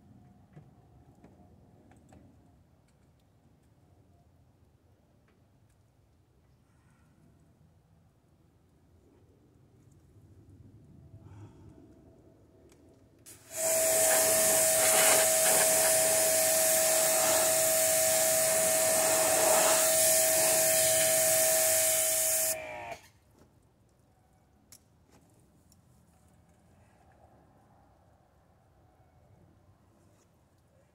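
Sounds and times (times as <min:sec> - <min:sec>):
electric blower whining: 0:13.3 - 0:23.0.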